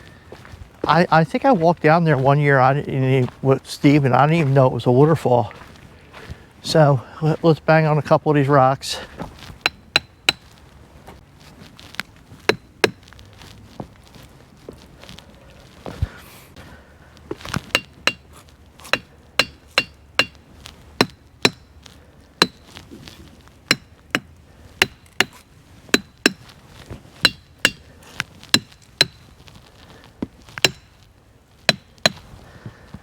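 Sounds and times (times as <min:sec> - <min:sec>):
hammer striking ringing rocks: 0:09.6 - 0:10.5, 0:12.5 - 0:13.1, 0:17.6 - 0:20.4, 0:21.0 - 0:21.7, 0:22.4 - 0:22.8, 0:23.7 - 0:26.5, 0:27.2 - 0:27.9, 0:28.5 - 0:29.4, 0:30.6 - 0:31.0, 0:31.7 - 0:32.2.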